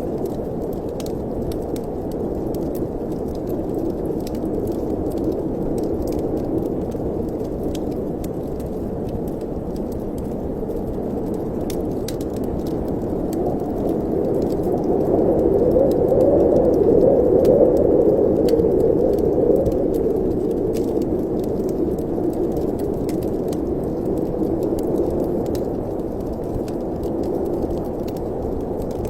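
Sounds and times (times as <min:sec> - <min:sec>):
fire crackling and popping: 0:00.0 - 0:29.0
wind blowing: 0:11.9 - 0:29.0.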